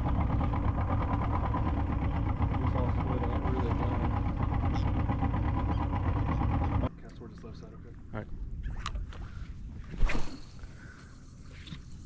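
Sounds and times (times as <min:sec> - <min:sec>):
outboard motor idling: 0:00.0 - 0:06.9.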